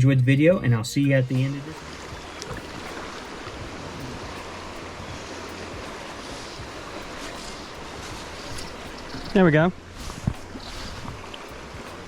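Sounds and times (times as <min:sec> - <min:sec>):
stream water rushing: 0:00.6 - 0:12.0.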